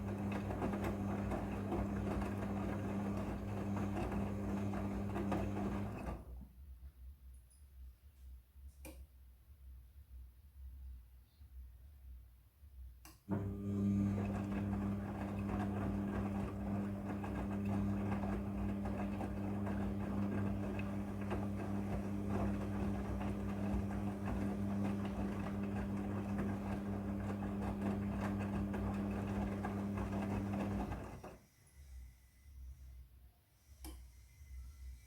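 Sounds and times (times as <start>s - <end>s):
washing machine motor hum: 0.0s - 6.4s, 13.3s - 31.4s.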